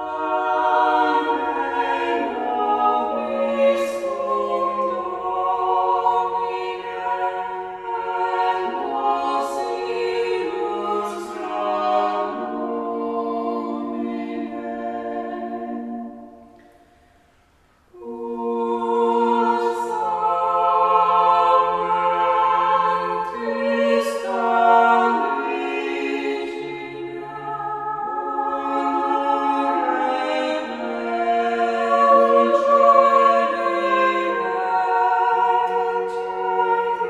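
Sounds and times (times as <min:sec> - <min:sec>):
choir singing: 0:00.0 - 0:16.8, 0:17.9 - 0:37.0.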